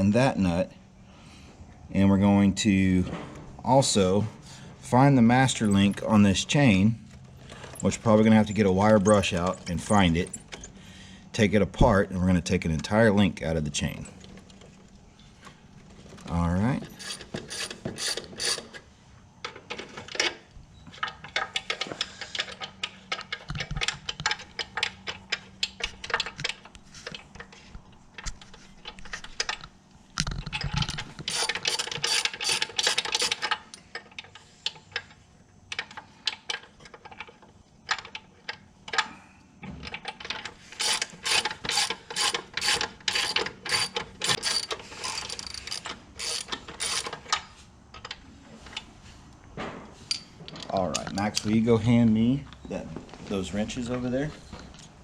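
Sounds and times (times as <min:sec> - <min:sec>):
rapid mechanical clicking: 0:30.5 - 0:34.8, 0:39.9 - 0:47.3.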